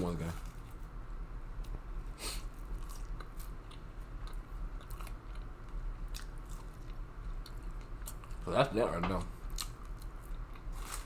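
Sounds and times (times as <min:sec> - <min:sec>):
person chewing fried chicken: 0:02.4 - 0:08.4, 0:09.4 - 0:11.0.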